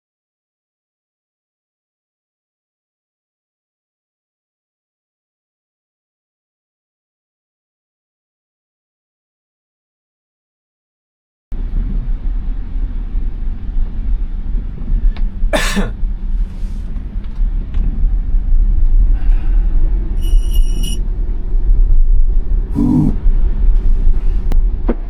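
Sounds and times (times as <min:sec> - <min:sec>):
road and tyre rumble in car: 0:11.5 - 0:25.0
high electronic chime: 0:20.2 - 0:21.0.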